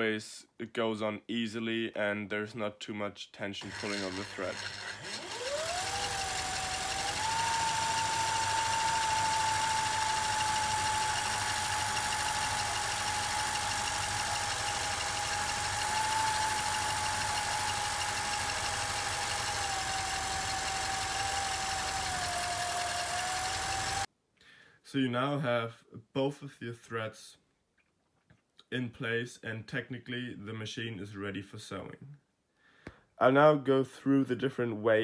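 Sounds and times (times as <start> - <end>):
sewing machine running: 3.6 - 24.1.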